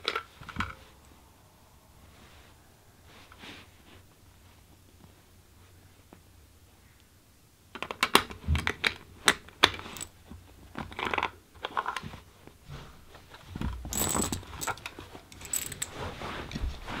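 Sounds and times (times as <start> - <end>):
cartridges clicking and clinking: 7.8 - 10.2, 13.9 - 15.9.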